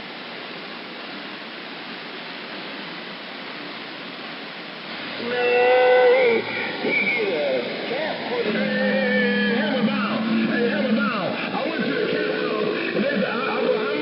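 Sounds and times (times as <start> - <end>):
radio receiver hiss: 4.9 - 14.0
garbled radio transmission: 5.2 - 14.0
horn-like radio tone: 5.2 - 14.0.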